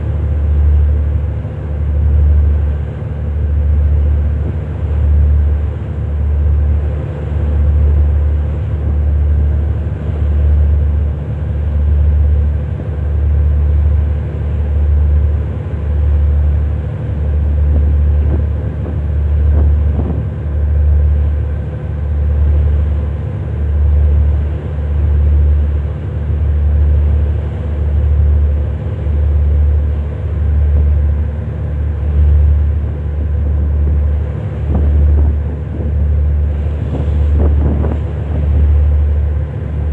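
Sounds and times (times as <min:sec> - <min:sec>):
ship engine drone throbbing: 0:00.0 - 0:39.9.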